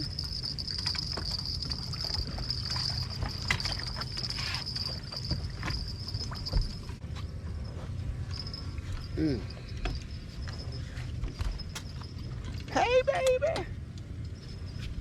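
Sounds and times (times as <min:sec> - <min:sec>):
high-pitched insect drone: 0:00.0 - 0:06.9
steady low rumble: 0:00.0 - 0:15.0.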